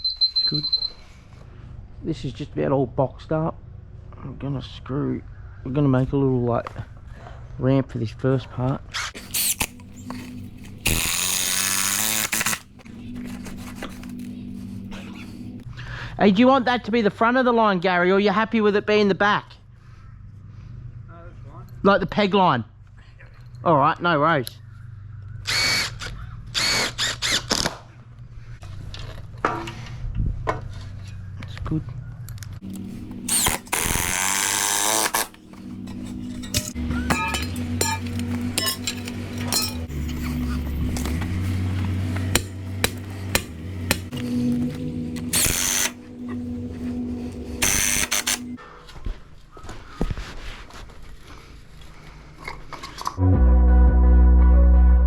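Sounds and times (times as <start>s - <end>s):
power tool whine: 9.2s - 15.5s, 25.5s - 26.0s, 26.6s - 27.6s, 32.6s - 48.6s
background music with held notes: 53.2s - 55.0s.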